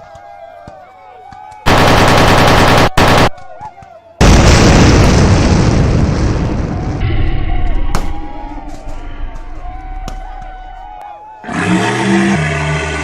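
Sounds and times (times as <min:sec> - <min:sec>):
gunfire bursts: 0:01.7 - 0:03.4
big explosion boom: 0:04.2 - 0:08.5.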